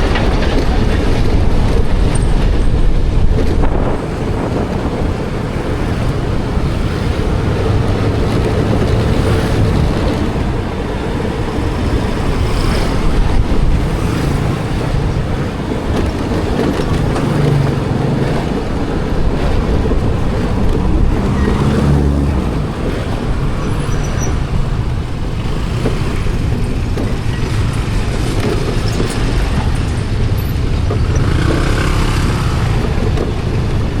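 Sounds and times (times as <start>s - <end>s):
road traffic: 0.0s - 34.0s.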